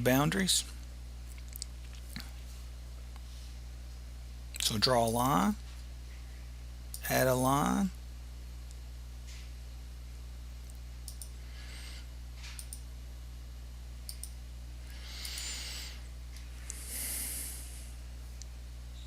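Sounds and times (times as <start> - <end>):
low electrical hum: 0.0 - 19.0
computer mouse clicking: 11.1 - 11.3, 12.6 - 12.8, 14.1 - 14.4
breaths close to microphone: 16.6 - 17.9.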